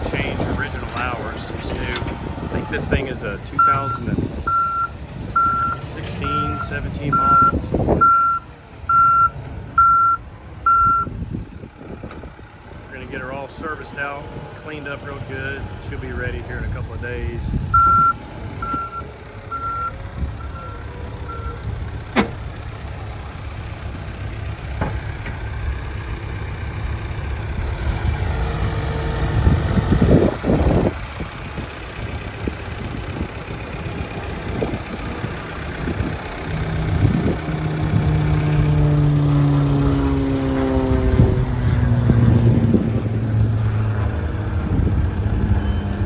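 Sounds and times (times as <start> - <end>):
diesel engine running: 0.0 - 46.0
reversing alarm beeping: 3.6 - 11.1, 17.7 - 21.7.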